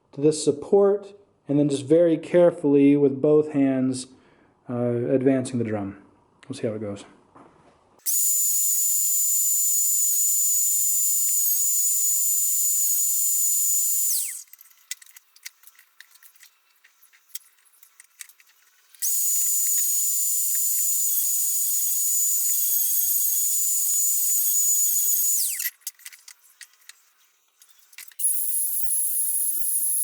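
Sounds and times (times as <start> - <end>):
wood router whining: 8.1 - 14.6, 18.8 - 30.0.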